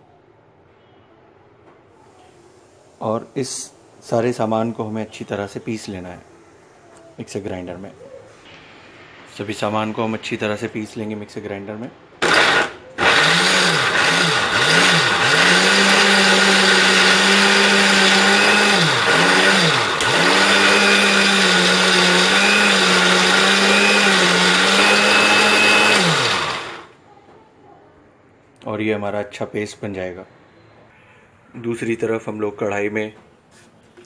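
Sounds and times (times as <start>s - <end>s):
mixer grinder motor grinding: 12.2s - 27.0s.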